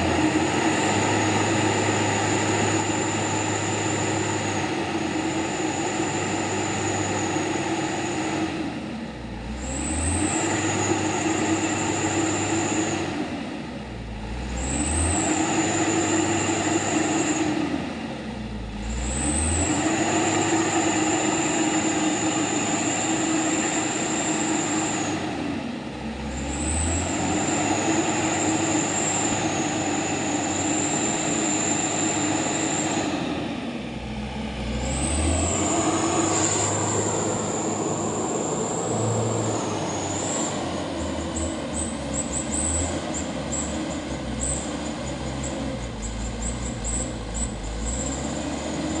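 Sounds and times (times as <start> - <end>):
truck engine running: 0.0 - 49.0
high whine: 27.4 - 49.0.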